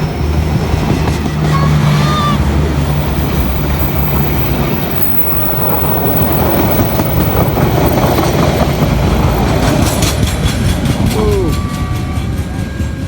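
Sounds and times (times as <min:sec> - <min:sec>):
train passing over rails: 0:00.0 - 0:13.0.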